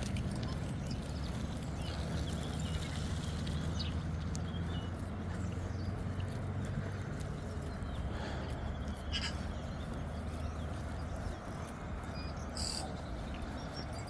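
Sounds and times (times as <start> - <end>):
short high bird calls: 9.0 - 9.6, 12.4 - 13.0.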